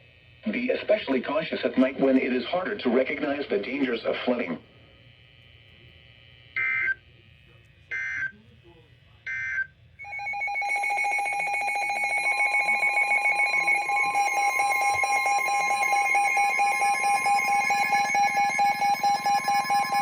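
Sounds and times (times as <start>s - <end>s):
electronic alarm tone: 9.3s - 20.0s
higher electronic tone: 10.0s - 20.0s.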